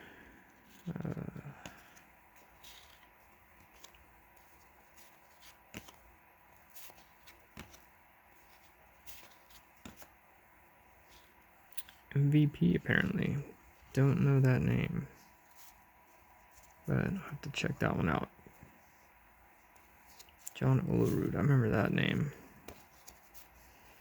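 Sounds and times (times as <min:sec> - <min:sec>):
faint steady hum: 0:00.0 - 0:24.0
cards being flipped through: 0:00.6 - 0:10.2, 0:19.7 - 0:24.0.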